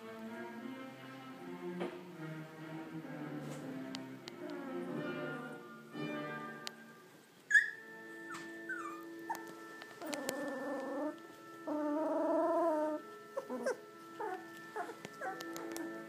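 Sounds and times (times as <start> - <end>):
quiet background music: 0.0 - 16.0
puppies whimpering: 7.5 - 16.0.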